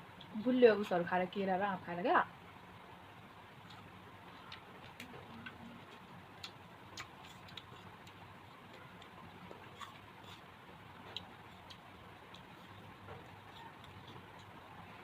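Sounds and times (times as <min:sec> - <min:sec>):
faint eating clicks and taps: 0:11.0 - 0:14.6.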